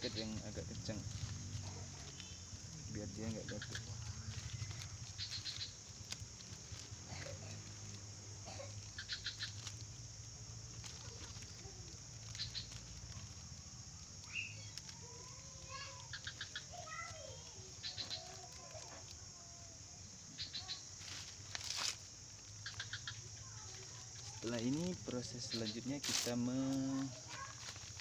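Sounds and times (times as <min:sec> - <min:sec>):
quick chirps: 0:00.0 - 0:10.0, 0:10.7 - 0:19.5, 0:22.6 - 0:28.0
plastic bag rustling: 0:00.0 - 0:19.7, 0:20.6 - 0:22.8, 0:23.4 - 0:28.0
faint wavering calls: 0:00.0 - 0:28.0
high insect drone: 0:00.0 - 0:28.0.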